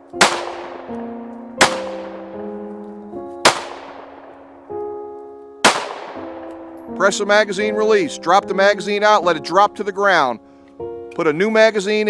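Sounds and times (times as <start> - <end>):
music of held notes: 0.0 - 12.0
pistol shots: 0.2 - 2.4, 3.4 - 4.6, 5.6 - 6.6.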